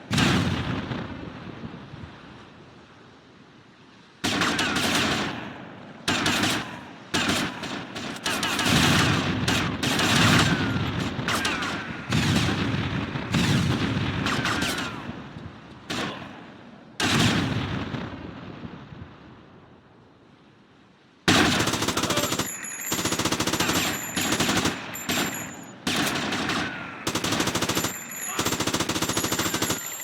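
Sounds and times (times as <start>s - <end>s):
gunfire bursts: 4.2s - 5.5s, 6.1s - 15.2s, 15.9s - 16.4s, 17.0s - 17.9s, 21.3s - 30.0s.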